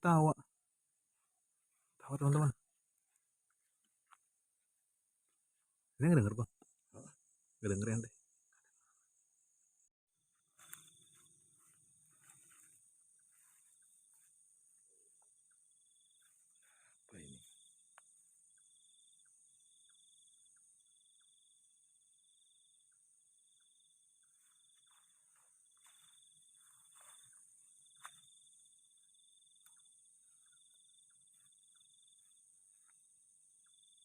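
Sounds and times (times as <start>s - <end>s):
crickets trilling: 0.0s - 34.0s
pulsing insect chirp: 0.0s - 34.0s
soft rustling: 10.6s - 14.4s.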